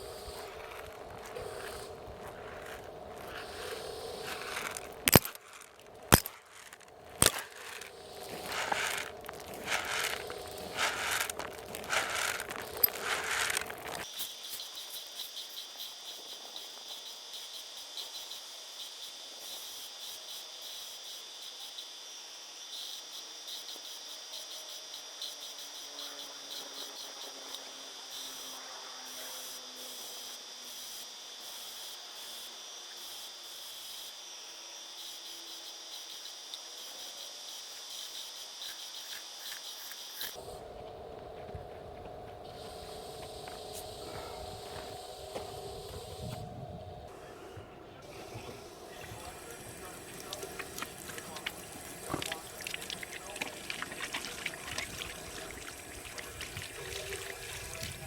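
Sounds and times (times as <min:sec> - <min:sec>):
scratchy rubbing: 0:00.0 - 0:14.1
insects chirping: 0:00.0 - 0:58.0.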